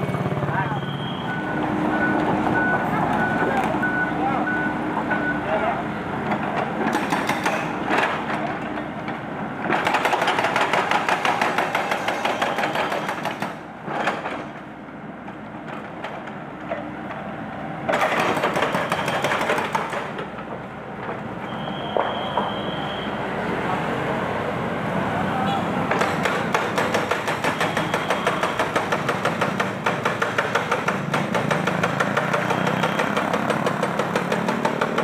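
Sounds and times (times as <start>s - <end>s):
hydraulic breaker hammering concrete: 6.8s - 8.5s, 9.6s - 14.4s, 17.9s - 20.3s, 25.9s - 35.0s.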